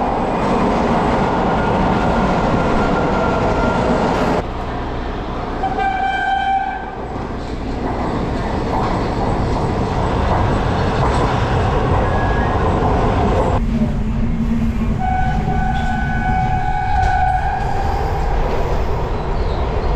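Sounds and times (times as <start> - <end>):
railcar rumble: 0.0 - 19.9
train horn blast: 5.6 - 7.0, 15.0 - 17.8.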